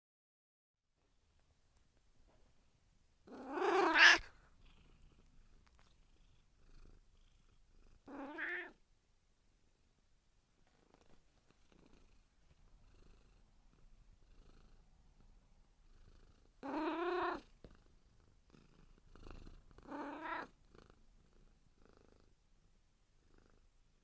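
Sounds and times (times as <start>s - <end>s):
cat purring: 3.2s - 8.8s, 10.6s - 24.0s
cat meowing: 3.4s - 4.3s, 8.1s - 8.8s, 20.0s - 20.5s.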